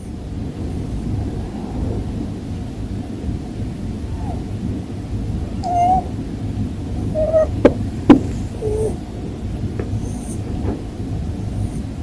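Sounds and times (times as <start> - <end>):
steady low rumble: 0.0 - 12.0
rabbit snoring: 7.0 - 10.6.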